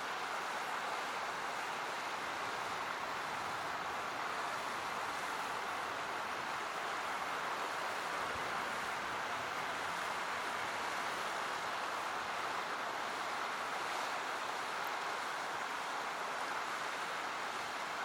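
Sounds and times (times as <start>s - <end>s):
river water rushing: 0.0s - 18.0s.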